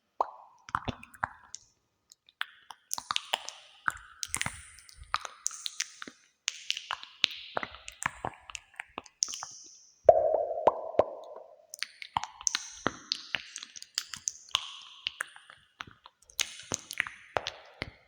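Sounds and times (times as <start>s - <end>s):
echoing clicks pops and taps: 10.1s - 11.9s.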